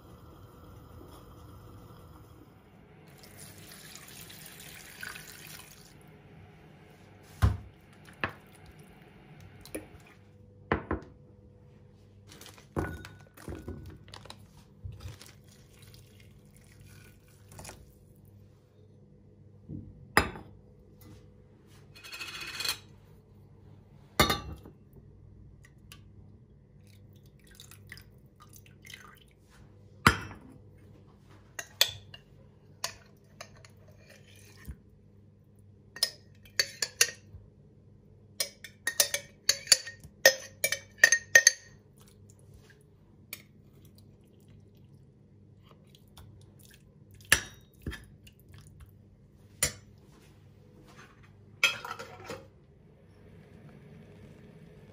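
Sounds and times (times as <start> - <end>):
low steady hum: 0.0 - 54.9
dishes and cutlery clinking: 21.9 - 22.9, 38.4 - 41.8, 51.6 - 52.5.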